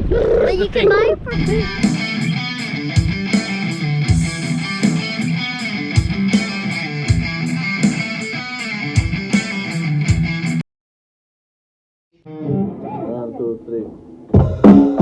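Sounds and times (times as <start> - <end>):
guitar music: 1.3 - 10.6, 12.2 - 15.0
low drum thumps: 14.3 - 15.0.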